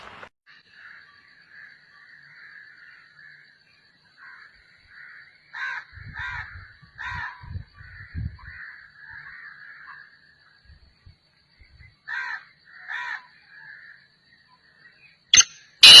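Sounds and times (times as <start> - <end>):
bird harsh calls: 15.4 - 16.0.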